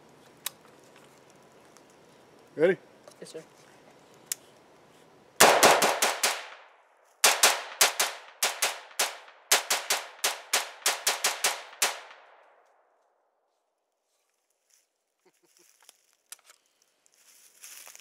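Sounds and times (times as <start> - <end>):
rifle shots with echo: 5.4 - 12.4.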